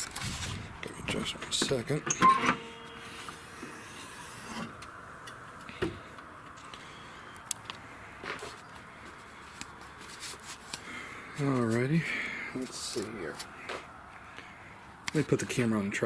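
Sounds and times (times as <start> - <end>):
rubbing and handling noise: 0.0 - 2.0, 8.2 - 10.8.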